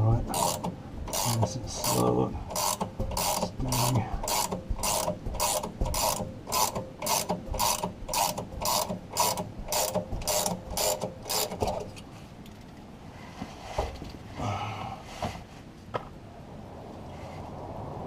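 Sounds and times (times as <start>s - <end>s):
ratchet wrench clicking: 0.3s - 11.6s.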